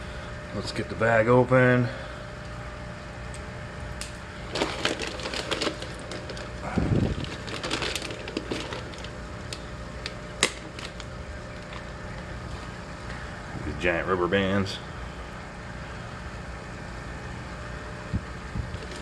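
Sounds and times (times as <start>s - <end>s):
plastic bag snapping: 4.0s - 11.9s
plastic bag crinkling: 4.4s - 9.6s.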